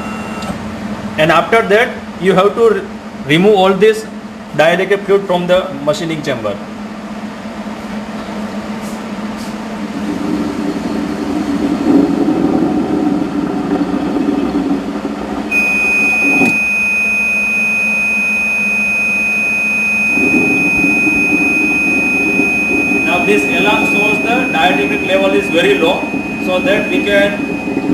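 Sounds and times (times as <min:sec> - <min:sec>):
high-pitched electronic alarm tone: 0:00.0 - 0:00.5, 0:15.5 - 0:27.9
machine low hum: 0:00.0 - 0:27.9.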